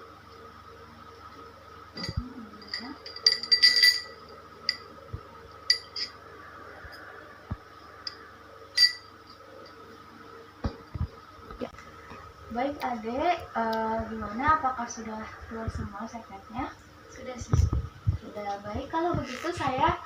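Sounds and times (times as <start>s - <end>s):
hard container clinking: 2.0s - 4.9s, 5.7s - 6.2s, 8.8s - 9.1s.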